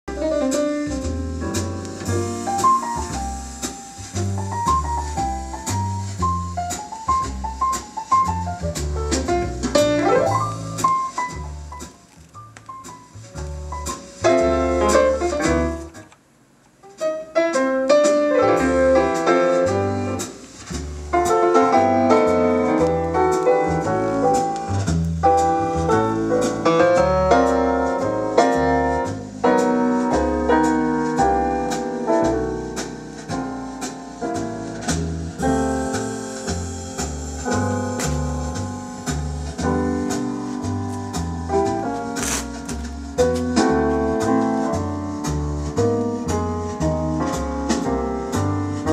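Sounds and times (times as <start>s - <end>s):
piano music with bass line: 0.0s - 16.2s, 16.8s - 48.9s.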